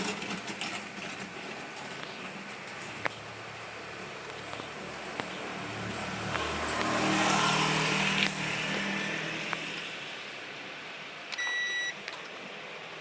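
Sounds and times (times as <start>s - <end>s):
oven humming and rushing: 0.0s - 10.6s
short electronic beep: 11.4s - 12.0s.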